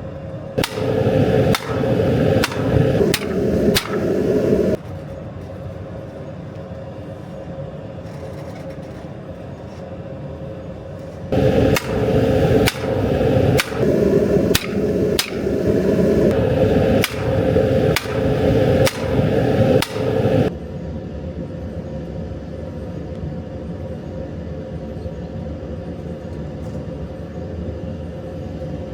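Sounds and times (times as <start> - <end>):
hammer blows on hot steel: 0.6 - 4.8, 11.4 - 20.5
steady rushing noise: 0.6 - 4.8, 11.3 - 20.5.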